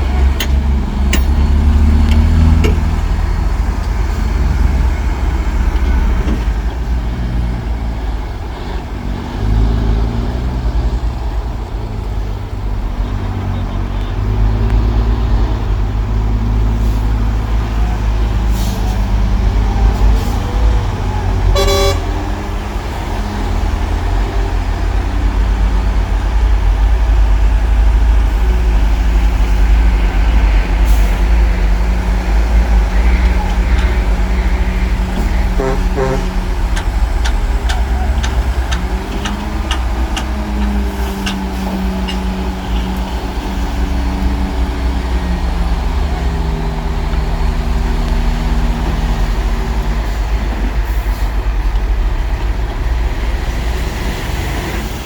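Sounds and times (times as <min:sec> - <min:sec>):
heavy diesel engine under load: 0:00.0 - 0:55.0
short horn beep: 0:21.5 - 0:22.1, 0:35.6 - 0:36.4.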